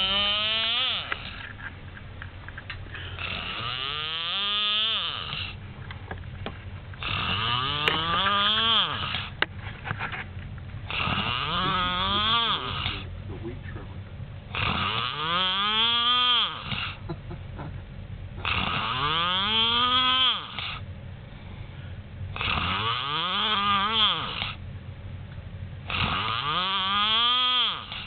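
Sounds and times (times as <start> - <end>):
person snoring: 0.0 - 1.4, 3.0 - 5.6, 7.0 - 9.4, 10.9 - 13.1, 14.6 - 17.0, 18.4 - 20.8, 22.4 - 24.6, 25.9 - 28.0.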